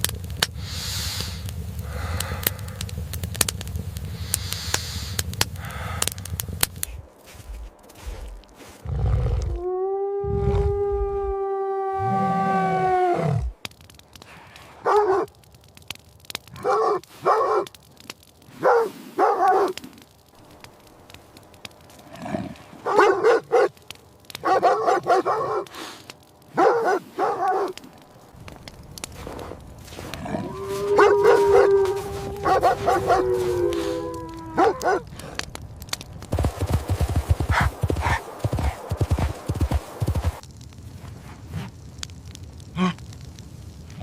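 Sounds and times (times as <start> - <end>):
dog howling: 9.5 - 13.5, 29.9 - 35.2
dogs barking: 14.8 - 15.3, 16.6 - 17.8, 18.6 - 19.8, 22.8 - 25.7, 26.5 - 27.8, 30.4 - 35.2, 37.4 - 38.8.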